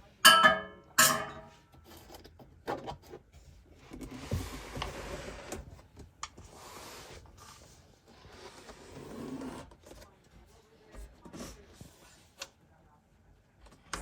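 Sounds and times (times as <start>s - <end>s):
rubbing and rustling: 1.6s - 12.4s.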